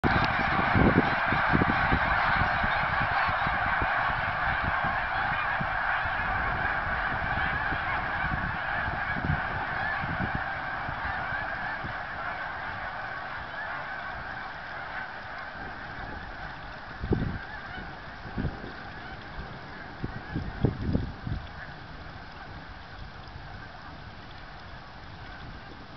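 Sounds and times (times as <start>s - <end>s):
geese honking: 0.0s - 25.9s.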